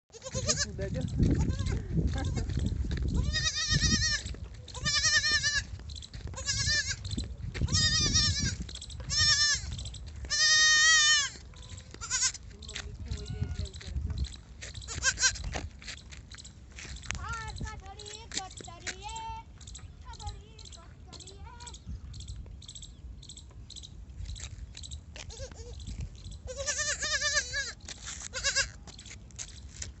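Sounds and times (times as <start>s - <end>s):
goat bleating: 0.1s - 12.5s, 14.8s - 15.5s, 25.2s - 28.8s.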